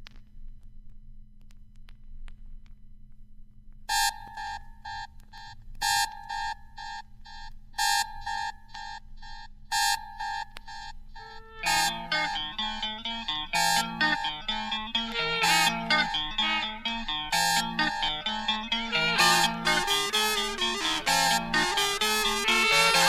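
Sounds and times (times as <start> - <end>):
electronic beeping pattern: 3.9 - 23.0.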